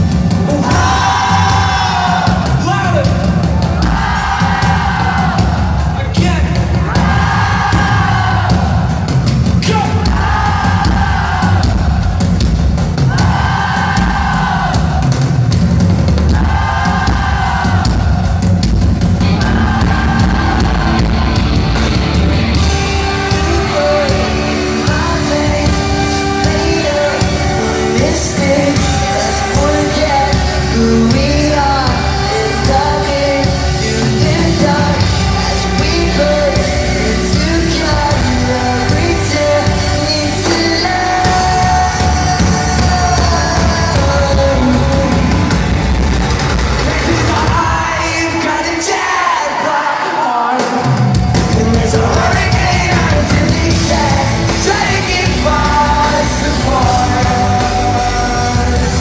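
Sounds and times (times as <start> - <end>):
pop-rock band playing live: 0.0 - 59.0
person singing: 22.5 - 45.8, 46.8 - 59.0.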